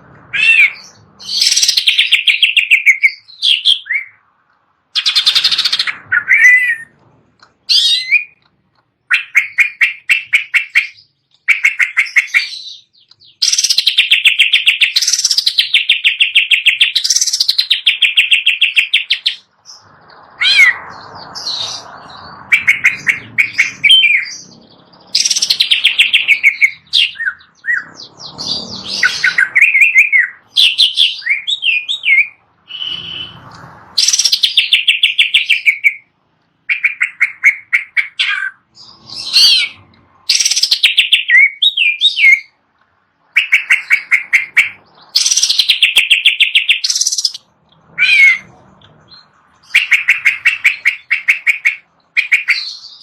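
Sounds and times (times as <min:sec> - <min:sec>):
bird singing fast high notes: 0:18.1 - 0:36.0.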